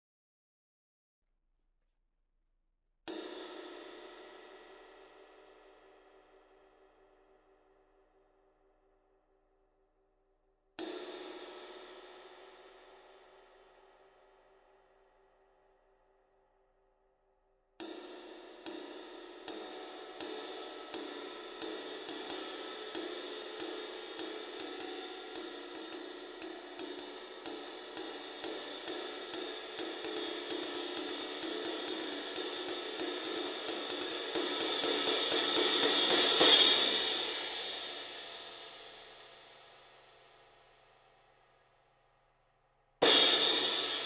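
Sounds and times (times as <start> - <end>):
crash cymbal struck: 17.8 - 39.9, 43.0 - 44.0.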